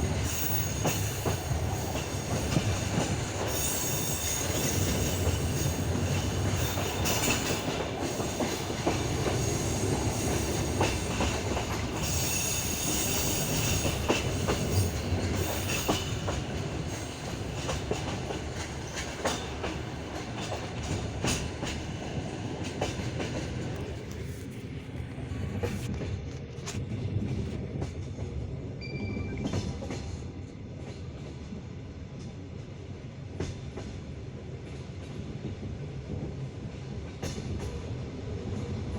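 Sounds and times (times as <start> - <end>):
train wheels clattering over rail joints: 0.0 - 24.3
steady train rumble: 0.0 - 38.9.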